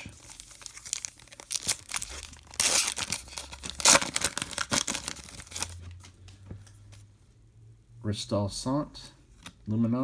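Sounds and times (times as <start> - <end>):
wrapper tearing and crinkling: 0.0 - 5.9.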